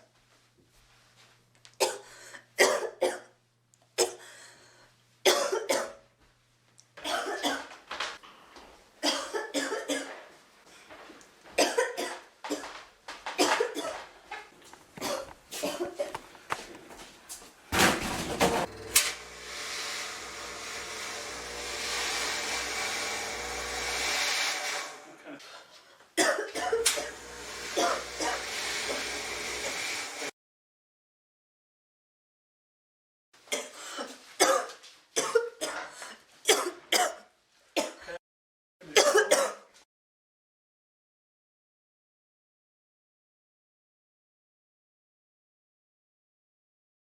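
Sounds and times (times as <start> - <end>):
woman coughing hard: 1.8 - 3.3, 4.0 - 4.3, 5.3 - 6.0, 7.0 - 7.7, 9.0 - 10.2, 11.6 - 12.7, 13.4 - 14.0, 15.0 - 16.3, 26.2 - 27.2, 27.8 - 28.4, 33.5 - 38.2, 38.8 - 39.7.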